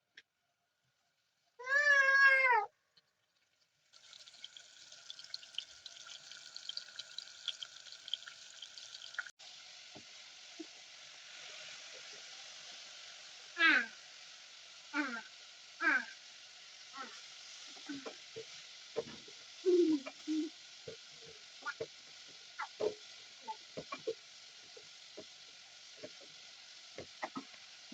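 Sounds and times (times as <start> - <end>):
wavering animal cry: 1.6 - 2.7
steady hiss with crackles: 3.4 - 27.9.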